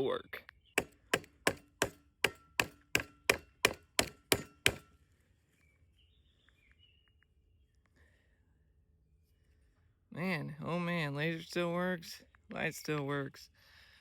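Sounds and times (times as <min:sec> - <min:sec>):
hard blows with metallic ring: 0:00.8 - 0:04.9.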